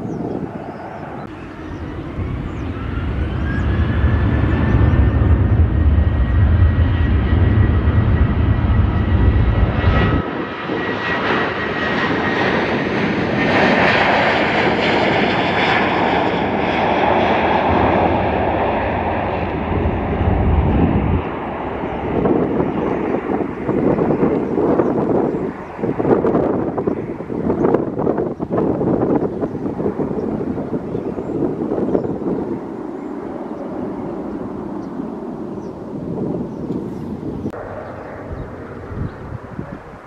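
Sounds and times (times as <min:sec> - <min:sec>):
heavy low rumble: 0:00.0 - 0:11.0, 0:17.7 - 0:29.1, 0:36.1 - 0:40.0
jet engine whine: 0:00.0 - 0:40.0.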